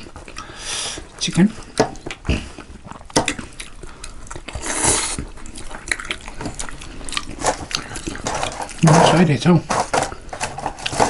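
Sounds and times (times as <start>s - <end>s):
chewing and eating: 0.0s - 11.0s.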